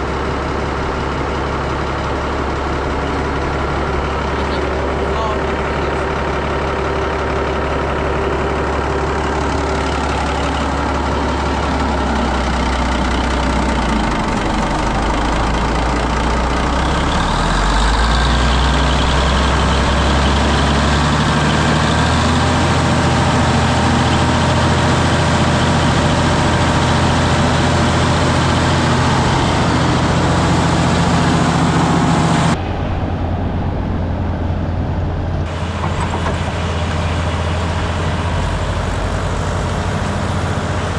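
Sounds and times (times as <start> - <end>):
sawmill engine running: 0.0 - 40.9
higher noise: 23.2 - 35.9.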